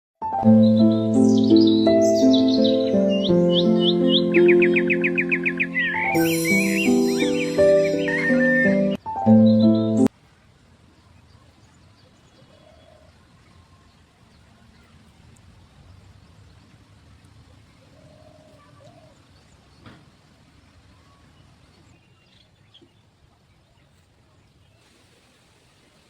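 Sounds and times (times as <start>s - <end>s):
faint outdoor background noise: 0.2s - 26.0s
distant call: 0.5s - 10.1s.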